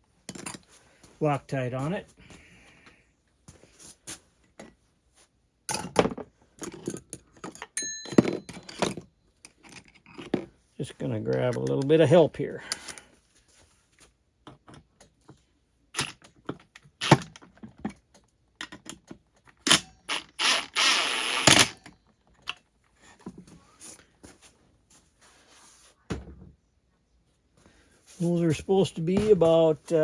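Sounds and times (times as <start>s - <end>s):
tools clicking and clattering: 5.7s - 10.5s.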